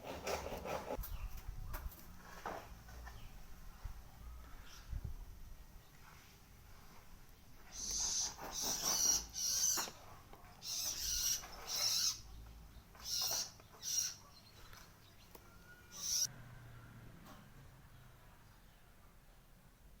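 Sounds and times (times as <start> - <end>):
bird harsh calls: 7.7 - 10.0, 10.6 - 14.4, 15.7 - 16.3.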